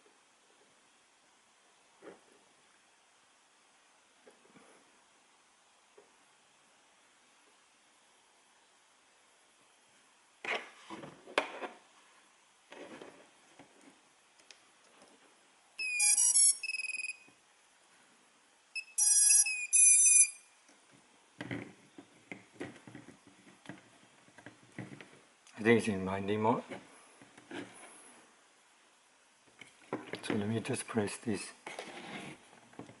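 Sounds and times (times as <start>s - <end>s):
electronic startup beeps: 15.8s - 17.2s, 18.8s - 20.4s.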